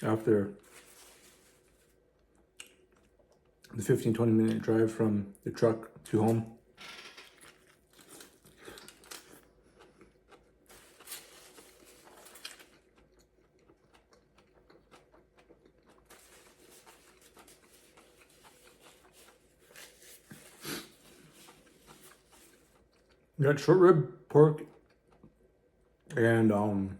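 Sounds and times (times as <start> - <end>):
biting and chewing food: 6.2 - 23.4, 24.6 - 26.1.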